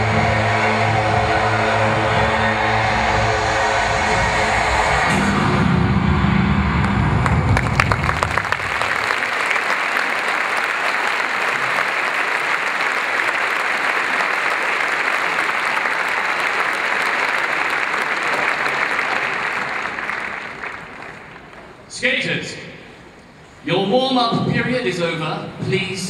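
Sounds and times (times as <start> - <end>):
music: 0.0 - 8.5
large crowd applauding: 6.8 - 21.9.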